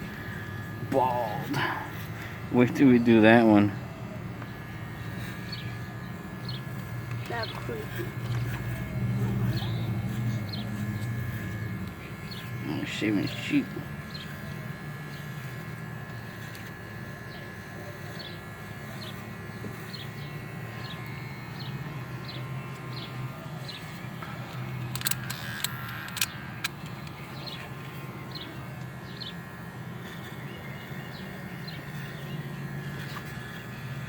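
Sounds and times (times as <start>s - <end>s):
electric pet clippers humming: 0.0s - 34.0s
sharp clicks: 24.5s - 27.2s.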